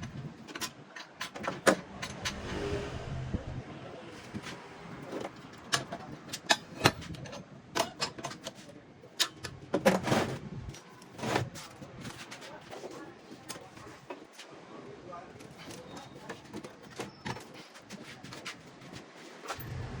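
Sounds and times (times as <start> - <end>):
sharp clicks and knocks: 0.0 - 2.6.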